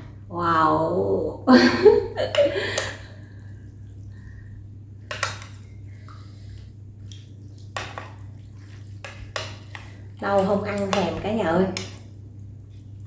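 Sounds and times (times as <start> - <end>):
steady low hum: 0.0 - 13.0
utensils clinking against bowl: 9.0 - 12.0.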